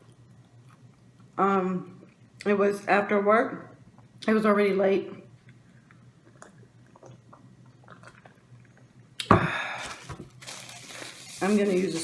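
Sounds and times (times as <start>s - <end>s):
chewing: 0.0s - 1.4s, 5.4s - 8.9s
food packaging rustling: 9.8s - 12.0s.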